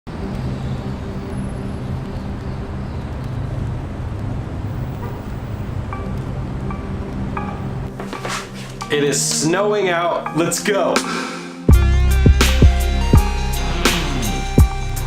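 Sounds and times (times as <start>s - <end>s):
road traffic: 0.0s - 9.0s, 11.9s - 15.0s.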